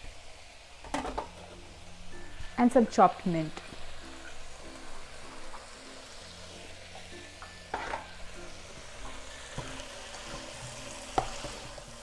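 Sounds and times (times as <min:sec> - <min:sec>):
vegetables sizzling in a pan: 0:00.0 - 0:12.0
spoon knocking against pan: 0:07.0 - 0:11.8.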